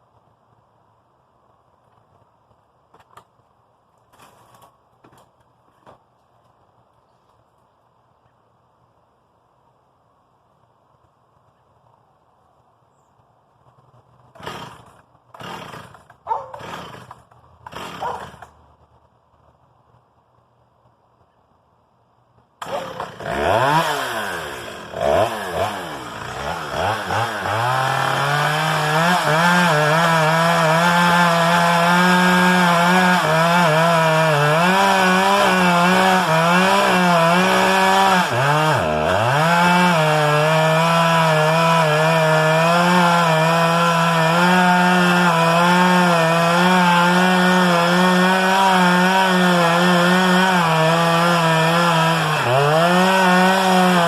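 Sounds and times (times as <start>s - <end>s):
chainsaw revving: 14.3s - 18.6s, 22.6s - 54.0s.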